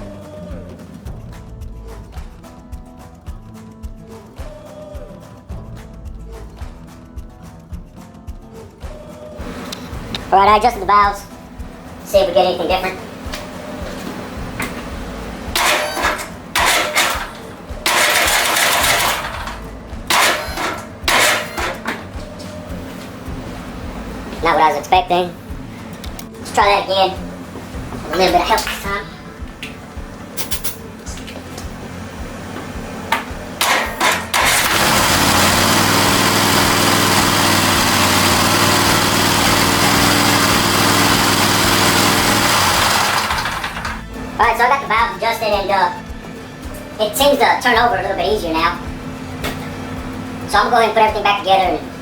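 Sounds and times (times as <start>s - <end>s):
mower engine cranking: 14.0s - 22.5s, 33.1s - 44.2s.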